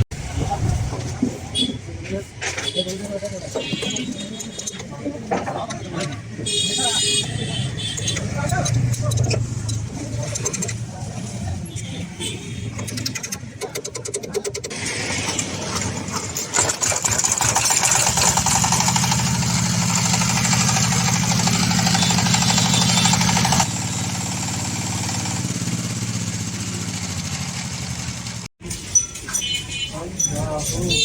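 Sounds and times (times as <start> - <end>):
diesel engine running: 14.7 - 28.5.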